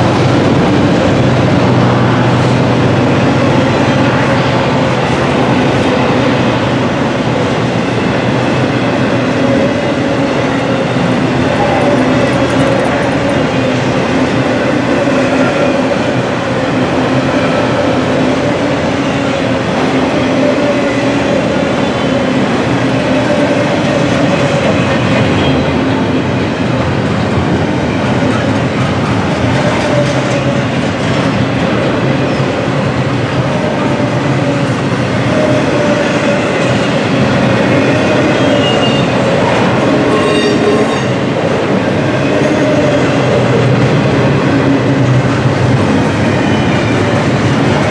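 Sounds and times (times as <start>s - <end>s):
train wheels rumbling on rail: 0.0s - 47.9s
clickety-clack over rail joints: 4.0s - 14.5s, 22.4s - 41.9s.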